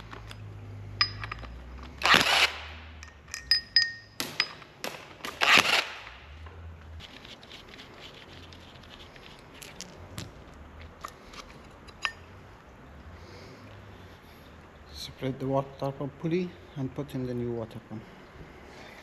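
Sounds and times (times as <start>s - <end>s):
metal tools clinking: 0.0s - 2.0s, 2.9s - 4.7s, 11.0s - 12.3s.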